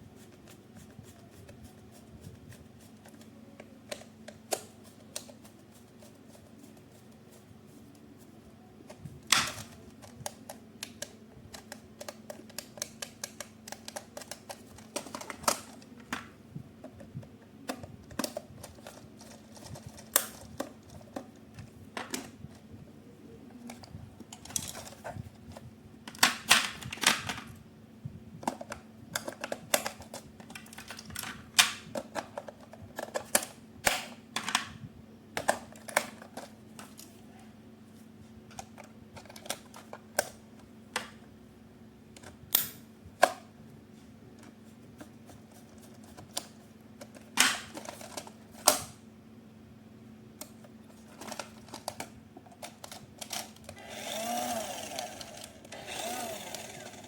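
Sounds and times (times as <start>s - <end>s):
faint steady hum: 0.0s - 57.0s
handling plastic toy parts: 8.8s - 22.7s, 23.5s - 27.6s, 28.4s - 34.7s, 35.4s - 37.2s, 38.5s - 40.4s, 44.4s - 49.0s, 50.4s - 57.0s.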